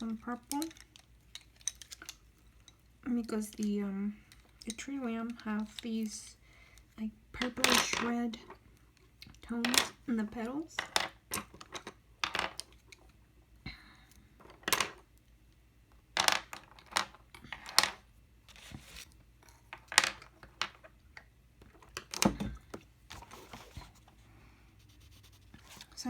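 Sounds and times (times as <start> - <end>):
colored pencils clattering: 0.0 - 6.3, 7.4 - 8.6, 9.2 - 13.1, 16.2 - 21.0
faint rustling: 23.0 - 26.0.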